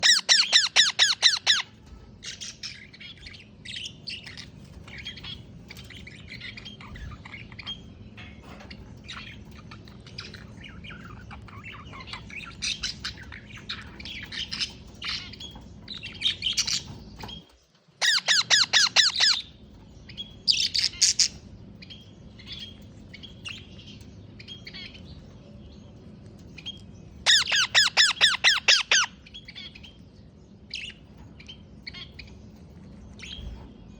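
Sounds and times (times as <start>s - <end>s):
parrot squawking and chirping: 0.0s - 17.4s, 18.0s - 22.8s, 26.7s - 30.0s.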